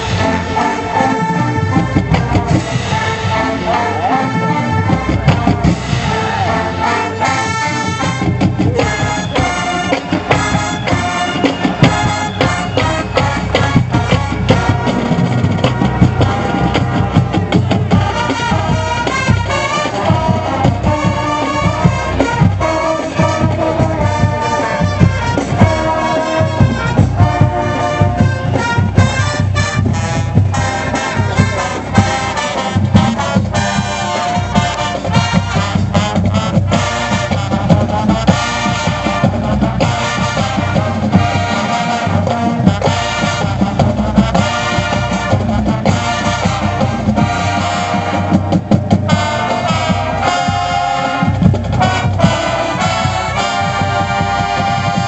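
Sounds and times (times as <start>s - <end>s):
marching band playing: 0.0s - 55.0s.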